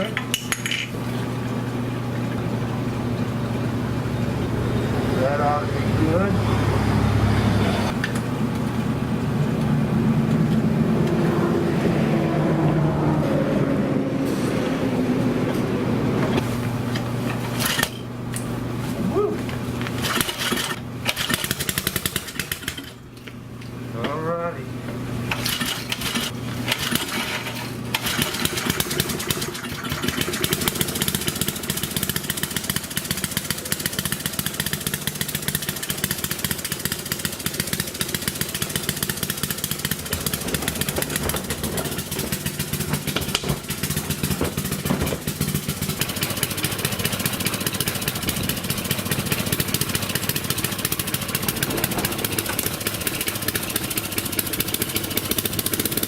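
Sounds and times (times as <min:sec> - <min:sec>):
small engine running: 0:02.6 - 0:13.1, 0:19.9 - 0:23.0, 0:25.3 - 0:56.0.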